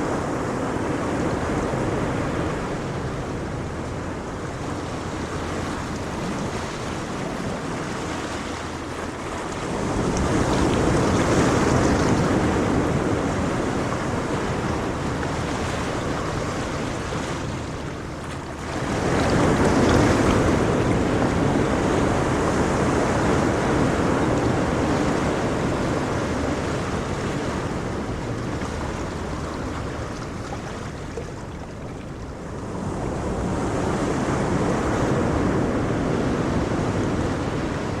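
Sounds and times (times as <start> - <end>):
gentle waves washing on shore: 0.0 - 38.0.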